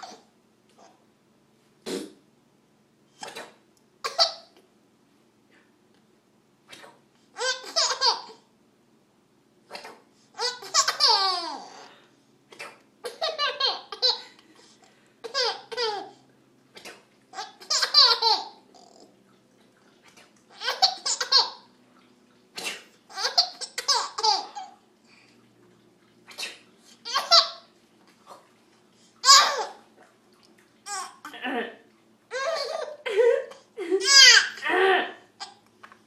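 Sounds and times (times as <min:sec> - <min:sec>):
baby laughing: 0:04.0 - 0:04.5, 0:07.4 - 0:08.5, 0:10.4 - 0:11.9, 0:13.0 - 0:14.4, 0:15.2 - 0:16.2, 0:17.3 - 0:19.1, 0:20.5 - 0:21.7, 0:23.1 - 0:24.8, 0:27.0 - 0:27.7, 0:29.2 - 0:29.8, 0:30.8 - 0:31.3, 0:32.3 - 0:34.6.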